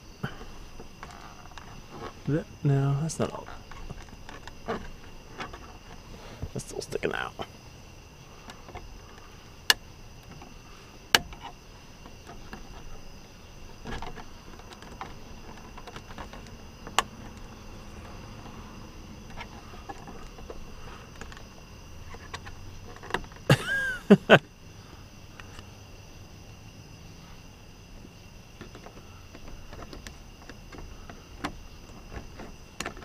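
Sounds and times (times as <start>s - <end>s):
plastic creak: 0.2s - 2.5s, 3.2s - 7.5s, 8.4s - 18.6s, 19.2s - 23.5s, 28.6s - 33.0s.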